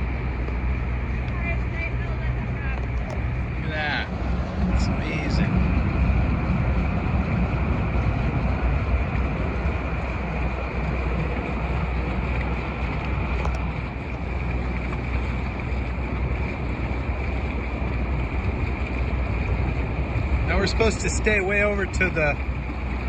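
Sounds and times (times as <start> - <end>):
low rumble: 0.0 - 23.0
wind noise on microphone: 0.0 - 23.0.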